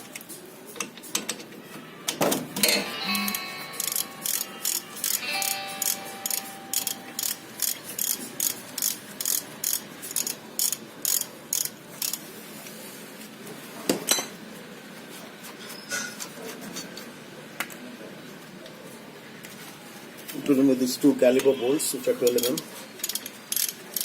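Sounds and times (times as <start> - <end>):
socket ratchet clicking: 6.8 - 12.2, 22.4 - 24.0.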